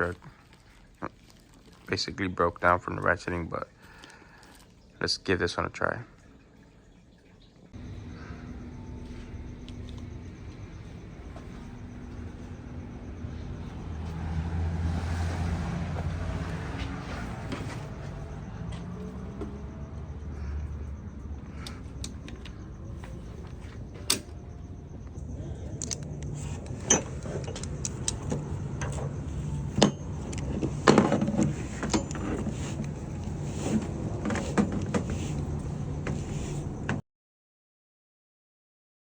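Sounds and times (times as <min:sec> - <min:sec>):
steady low hum: 0:07.8 - 0:37.0.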